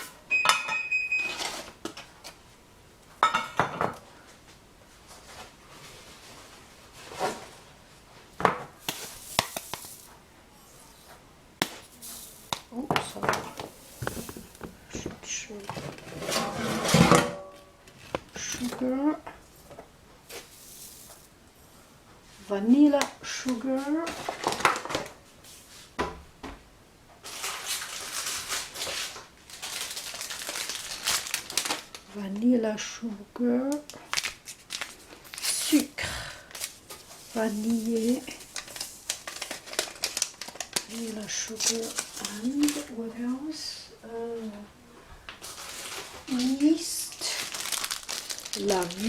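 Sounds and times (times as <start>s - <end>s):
kitchen utensils clinking: 11.9s - 17.6s.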